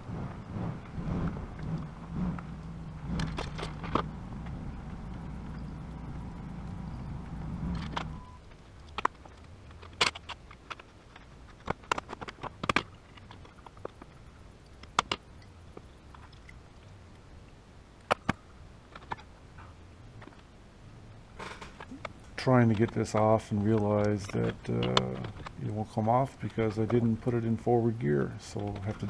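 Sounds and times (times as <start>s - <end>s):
low steady hum: 0.0s - 8.4s, 21.4s - 29.0s
tools and metal parts clicking: 21.4s - 27.4s.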